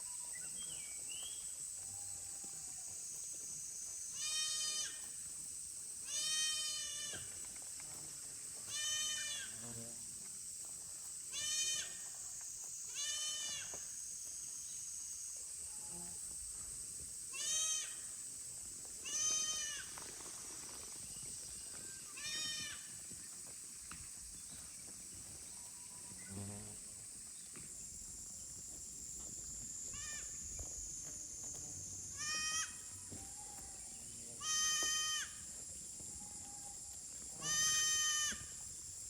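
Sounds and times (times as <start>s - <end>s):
young goats bleating: 4.2s - 5.0s, 6.0s - 7.3s, 8.7s - 9.6s, 11.3s - 12.0s, 12.9s - 13.7s, 17.3s - 18.0s, 19.0s - 19.9s, 22.0s - 22.9s, 32.1s - 33.6s, 34.4s - 35.5s, 37.4s - 38.6s.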